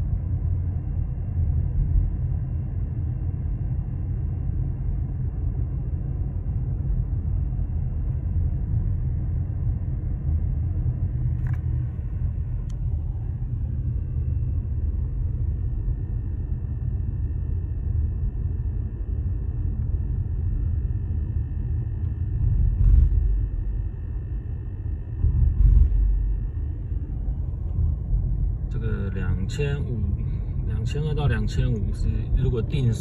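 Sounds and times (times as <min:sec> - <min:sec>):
car cabin rumble: 0:11.1 - 0:16.5, 0:19.5 - 0:33.0.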